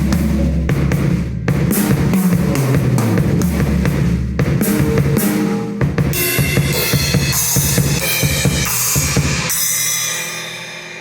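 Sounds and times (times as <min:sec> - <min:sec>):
drum kit playing: 0:00.0 - 0:11.0
cymbal crash ringing: 0:04.5 - 0:11.0.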